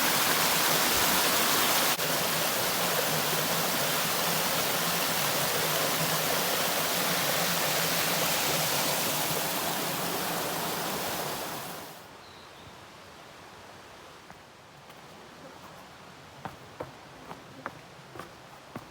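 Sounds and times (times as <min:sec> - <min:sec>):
flowing water rushing: 0:00.0 - 0:12.0.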